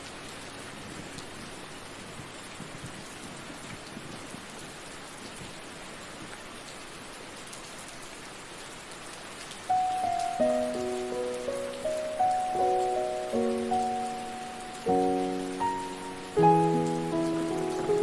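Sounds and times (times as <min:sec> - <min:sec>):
steady rain falling: 0:00.0 - 0:18.0
sustained musical note: 0:09.8 - 0:18.0.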